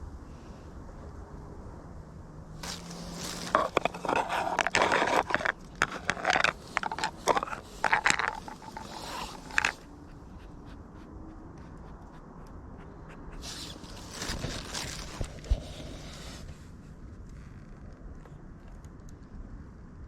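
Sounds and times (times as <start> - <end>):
cats chewing meat: 2.6 - 16.0.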